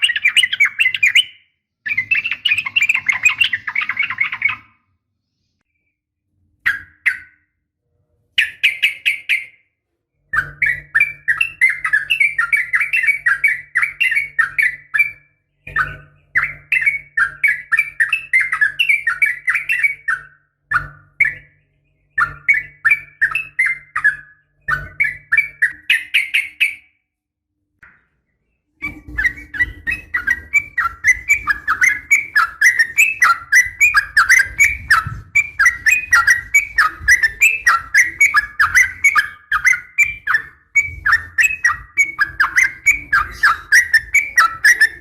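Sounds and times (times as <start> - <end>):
bird chattering call: 28.8 - 45.0.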